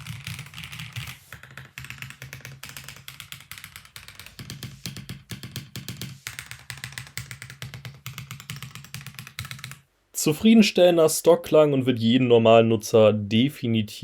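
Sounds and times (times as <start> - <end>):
mechanical keyboard typing: 0.0 - 9.8.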